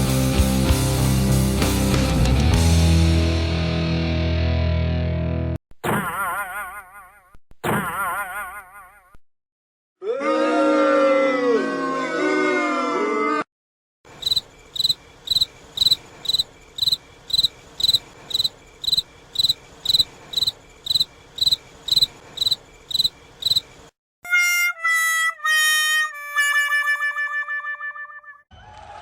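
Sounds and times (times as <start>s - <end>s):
cartoon cricket chirping: 14.1s - 23.9s.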